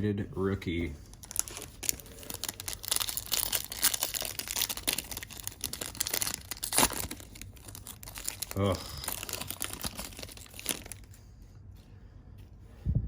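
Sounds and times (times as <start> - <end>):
foil wrapper crinkling and tearing: 1.0 - 11.3.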